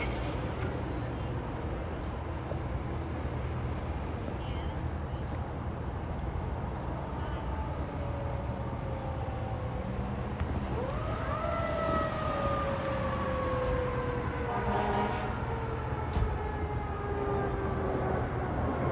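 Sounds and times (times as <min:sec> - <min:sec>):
truck engine rumble: 0:00.0 - 0:18.9
fire engine siren: 0:06.8 - 0:18.9.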